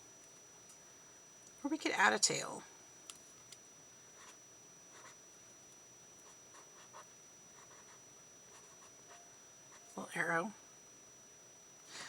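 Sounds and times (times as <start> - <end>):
pen scratching on paper: 6.2 - 9.2.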